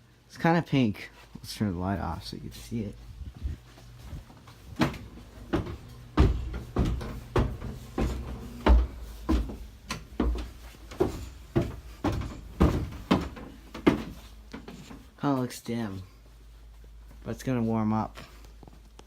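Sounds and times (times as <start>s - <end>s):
knocks and low thumps: 4.1s - 14.2s.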